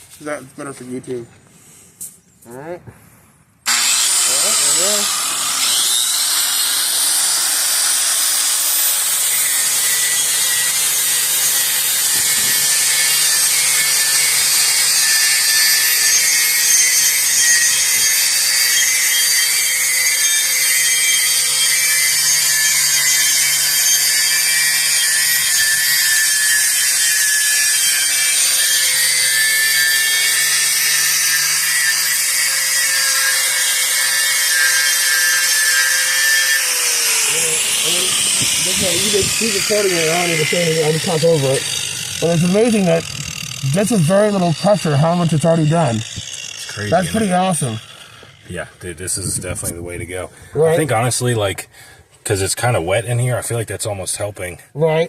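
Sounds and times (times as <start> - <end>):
electric sander on metal: 3.6 - 51.2.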